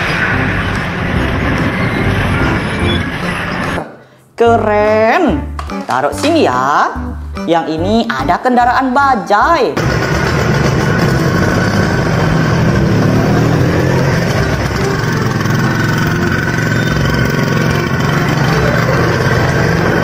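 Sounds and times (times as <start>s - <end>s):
auto-rickshaw engine idling: 9.8s - 20.0s.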